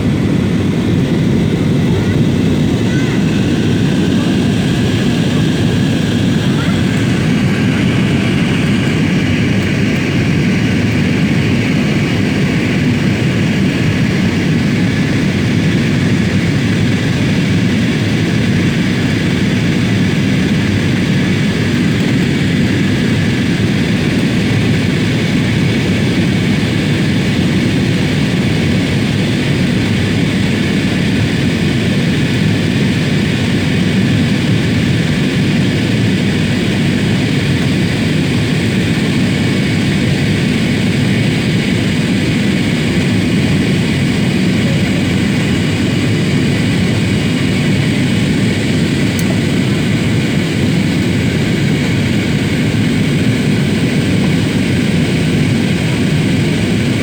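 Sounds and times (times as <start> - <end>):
rushing air in cabin: 0.0 - 10.9
airliner engines droning: 0.0 - 57.0.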